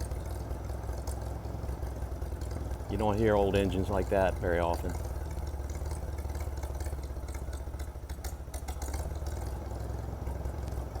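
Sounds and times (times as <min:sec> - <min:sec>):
tractor engine idling: 0:00.0 - 0:11.0.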